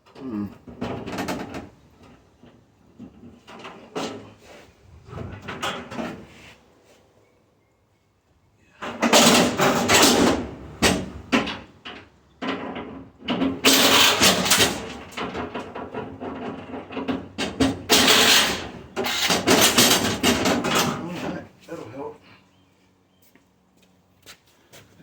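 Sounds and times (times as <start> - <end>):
tools clanking on metal: 8.8 - 21.5.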